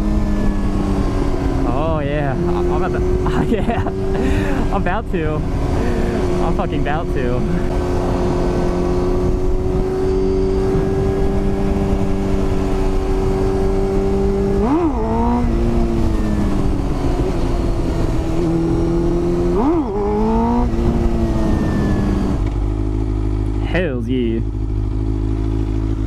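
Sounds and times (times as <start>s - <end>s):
motorcycle engine revving: 0.0s - 26.0s
wind noise on microphone: 7.4s - 22.4s.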